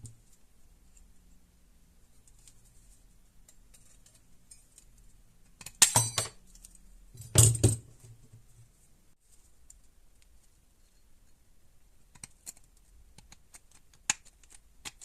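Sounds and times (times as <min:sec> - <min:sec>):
small metal tools clattering: 0:05.8 - 0:07.8.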